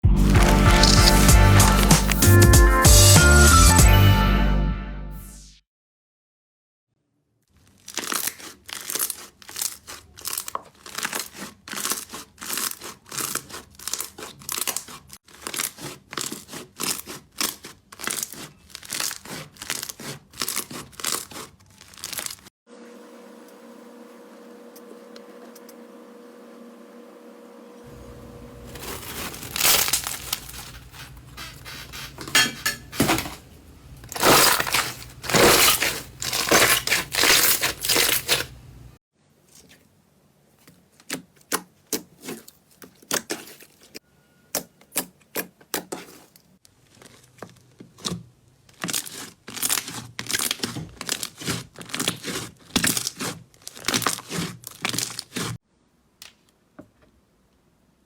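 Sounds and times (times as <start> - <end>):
slime crackling and popping: 0.3 - 2.2, 7.7 - 22.5.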